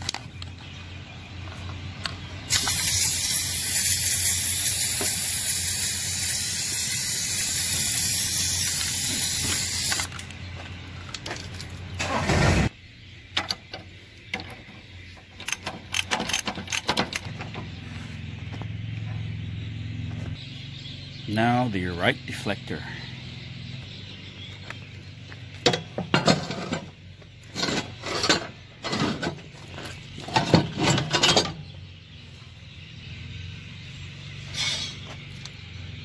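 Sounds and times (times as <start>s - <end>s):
loud steady hiss: 2.5s - 10.2s
tools clicking on metal: 15.4s - 17.4s.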